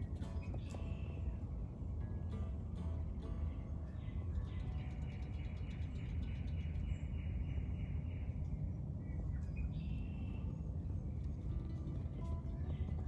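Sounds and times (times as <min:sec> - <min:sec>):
songbird singing: 0:00.0 - 0:13.0
steady low rumble: 0:00.0 - 0:13.0.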